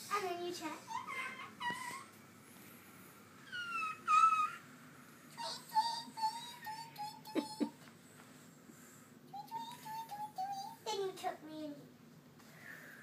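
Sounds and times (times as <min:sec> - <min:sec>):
high-pitched whimpering cries: 0:00.8 - 0:02.2, 0:03.4 - 0:04.7, 0:05.3 - 0:07.8.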